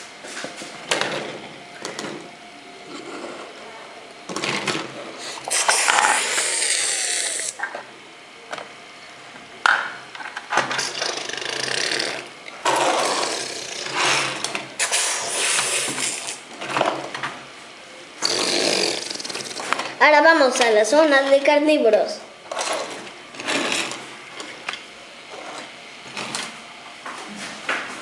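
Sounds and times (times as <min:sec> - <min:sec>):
person imitating dinosaur roars: 0:05.7 - 0:07.6.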